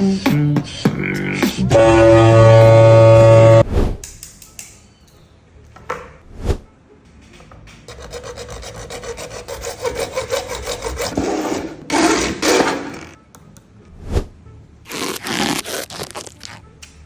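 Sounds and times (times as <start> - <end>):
fast rasping rub: 7.9 - 12.7.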